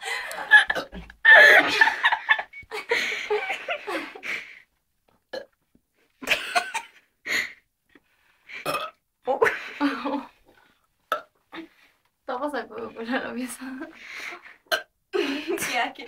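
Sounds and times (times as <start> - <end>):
loud burps: 5.3 - 5.6, 8.6 - 9.0, 11.1 - 11.4, 14.7 - 14.9.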